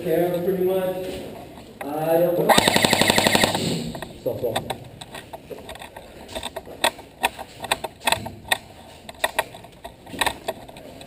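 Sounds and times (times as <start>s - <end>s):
airsoft gun shots: 2.5s - 4.1s.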